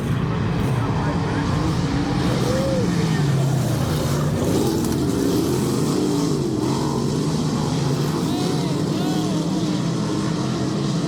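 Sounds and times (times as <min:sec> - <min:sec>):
race car engines droning: 0:00.0 - 0:11.0.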